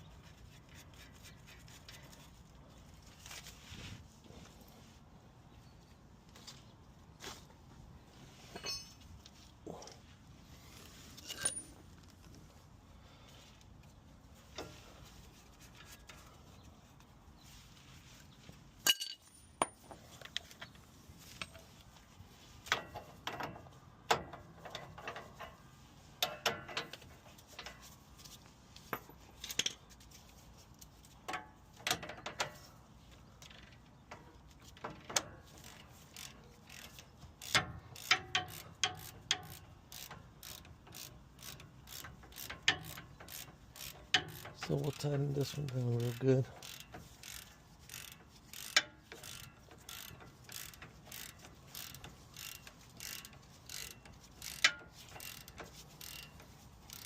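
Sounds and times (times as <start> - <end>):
metallic clinks of hand tools: 8.5 - 9.0, 11.2 - 11.8.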